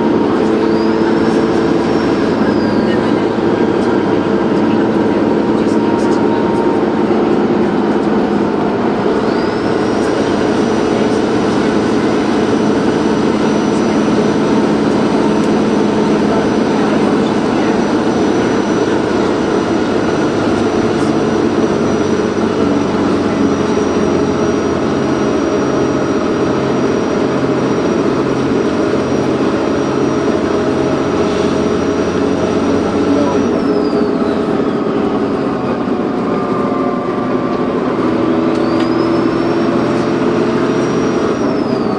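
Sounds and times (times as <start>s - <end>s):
bus diesel engine running: 0.0s - 41.9s
high turbocharger whistle: 9.1s - 35.3s, 37.9s - 41.9s.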